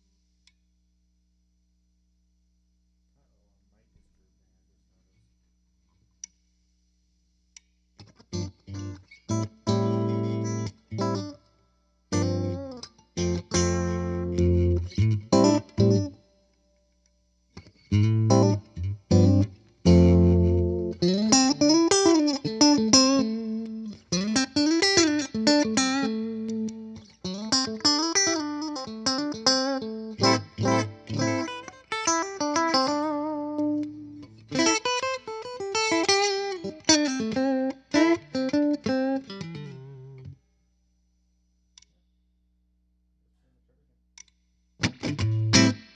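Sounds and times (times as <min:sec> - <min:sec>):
amplified bass guitar sliding notes: 0:08.4 - 0:11.3, 0:12.1 - 0:16.2, 0:17.8 - 0:31.7, 0:44.8 - 0:45.8.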